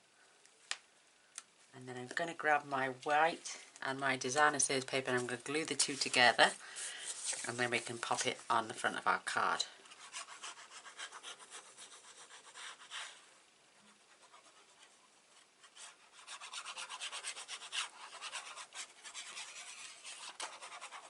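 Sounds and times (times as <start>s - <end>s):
rubbing strokes across paper: 5.0s - 8.4s, 9.8s - 21.0s.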